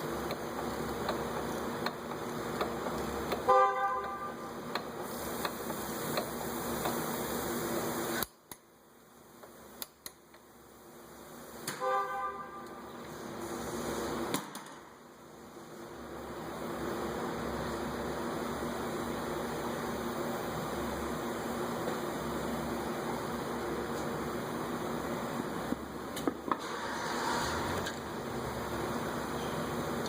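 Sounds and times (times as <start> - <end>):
steady background hum: 0.0 - 30.0
car horn honks: 3.4 - 4.5, 11.8 - 12.8.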